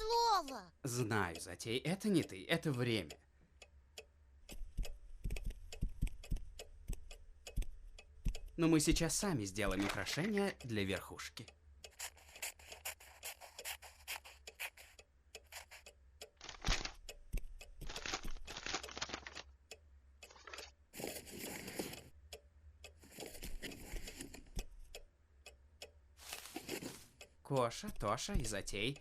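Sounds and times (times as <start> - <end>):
cartoon paper scraping and rustling: 9.7 - 10.5, 11.9 - 15.8, 16.4 - 17.0, 17.8 - 19.4, 20.3 - 22.1, 23.0 - 24.4, 26.2 - 27.2.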